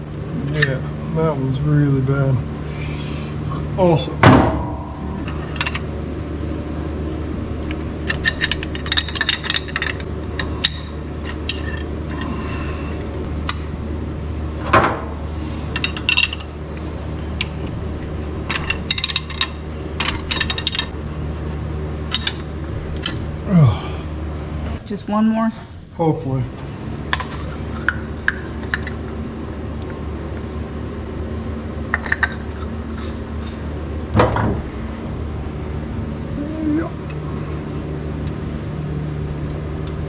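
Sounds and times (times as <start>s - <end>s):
steady low hum: 0.0s - 40.0s
metal tools clinking and tapping: 7.7s - 12.3s, 15.7s - 16.6s, 18.5s - 20.9s, 22.1s - 23.2s, 37.1s - 38.4s.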